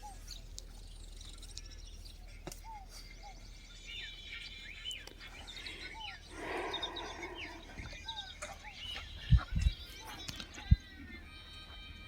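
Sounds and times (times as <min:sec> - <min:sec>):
birds whistling: 0:00.0 - 0:11.7
high bird chirps: 0:02.6 - 0:11.3.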